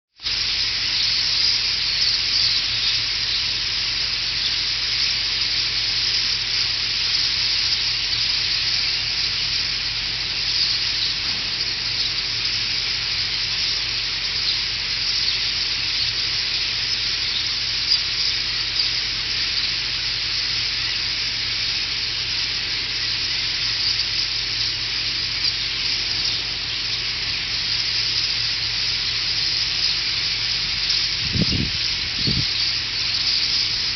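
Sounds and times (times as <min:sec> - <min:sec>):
flock of birds chattering: 0:00.2 - 0:33.9.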